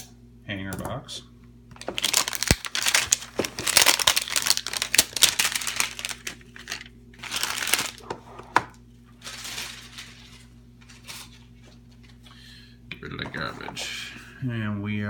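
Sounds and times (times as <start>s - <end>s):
plastic wrapping tearing and crackling: 1.8s - 8.2s, 9.1s - 11.6s.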